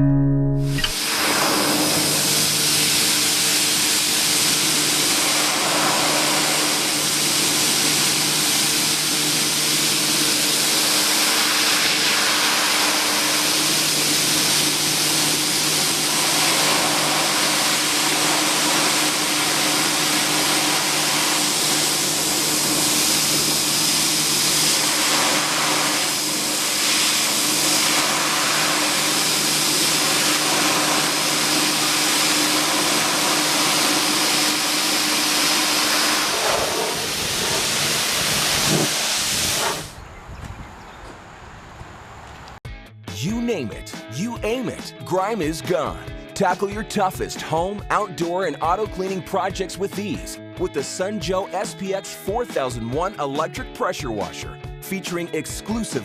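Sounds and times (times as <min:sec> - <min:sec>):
pressure washer motor hum: 0:00.6 - 0:40.0
high-pressure water spray hiss: 0:00.9 - 0:40.0.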